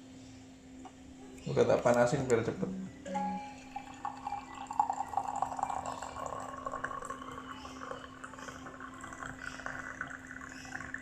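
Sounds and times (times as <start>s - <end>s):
hot water pouring: 3.6s - 11.0s.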